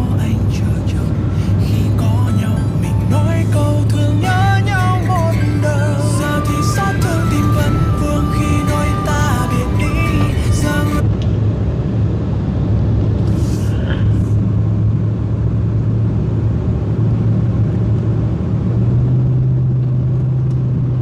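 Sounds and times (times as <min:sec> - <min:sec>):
car engine and tyre hum: 0:00.0 - 0:21.0
music: 0:02.0 - 0:11.0.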